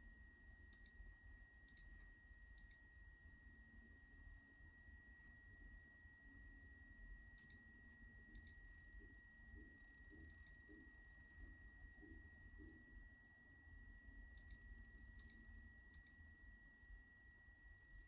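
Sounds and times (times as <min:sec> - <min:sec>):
faint high-pitched rotor whine: 0:00.0 - 0:18.0.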